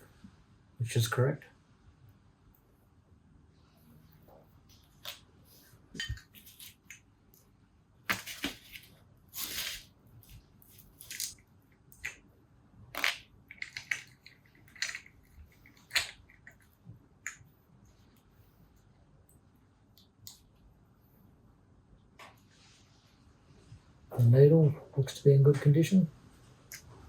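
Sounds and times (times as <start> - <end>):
small metal parts clicking: 12.9 - 17.4.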